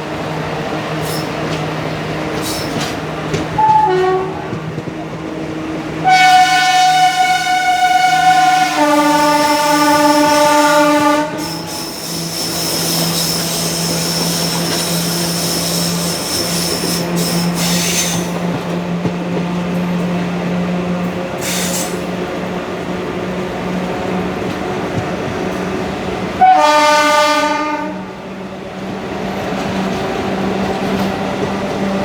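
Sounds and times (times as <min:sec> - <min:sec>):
train coaches running on track: 0:00.0 - 0:32.0
locomotive horn: 0:03.6 - 0:04.7, 0:06.0 - 0:11.7, 0:26.4 - 0:28.2
high wheel squeal: 0:11.4 - 0:18.3.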